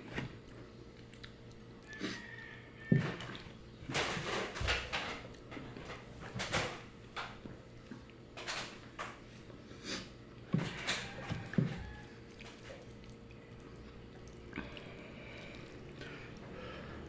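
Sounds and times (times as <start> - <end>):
person chewing noodles: 0.0 - 3.7, 11.1 - 17.0.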